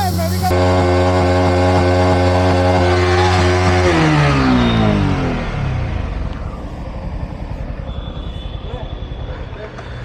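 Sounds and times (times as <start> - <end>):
motorcycle engine revving high: 0.0 - 10.0.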